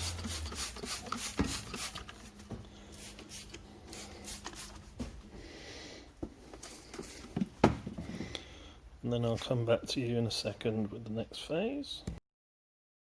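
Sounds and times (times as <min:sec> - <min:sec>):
spray cleaner hiss: 0:00.0 - 0:02.0, 0:02.9 - 0:04.8.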